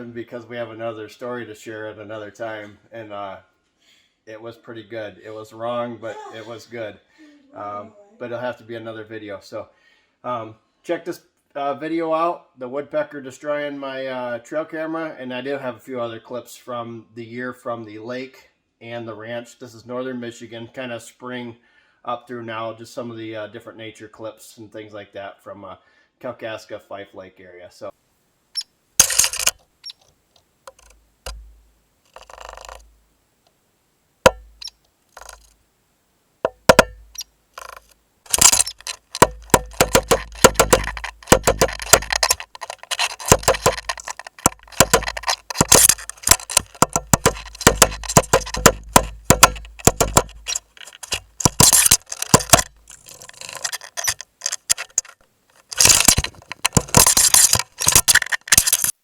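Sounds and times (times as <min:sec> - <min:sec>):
woodpecker tapping on plastic: 0:30.7 - 0:32.9, 0:34.3 - 0:35.5, 0:36.5 - 0:55.1, 0:55.7 - 0:58.9.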